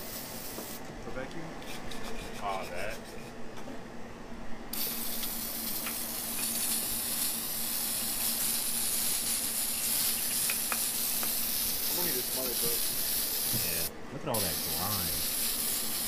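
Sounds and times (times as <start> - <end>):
aerosol spray hiss: 0.0 - 0.8, 4.7 - 16.0.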